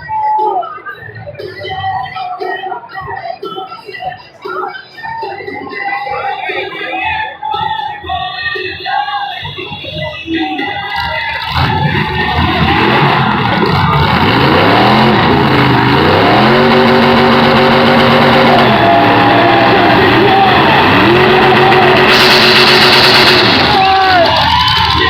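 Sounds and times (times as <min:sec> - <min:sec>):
pickup truck engines revving: 0:10.8 - 0:25.0.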